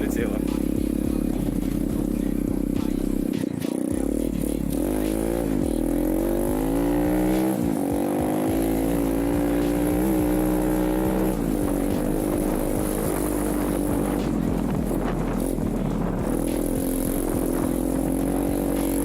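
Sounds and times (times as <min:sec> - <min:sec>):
motorcycle engine revving: 0:00.0 - 0:19.0.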